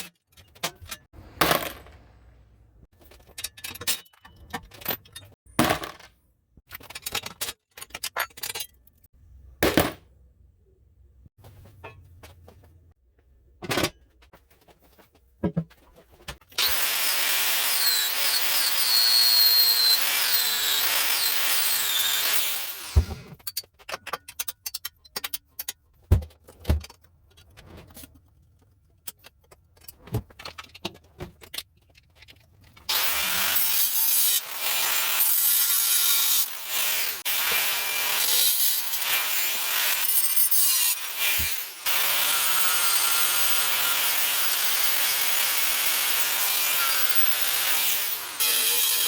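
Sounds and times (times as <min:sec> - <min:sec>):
power tool abrading: 0:16.6 - 0:23.3, 0:32.9 - 0:49.0.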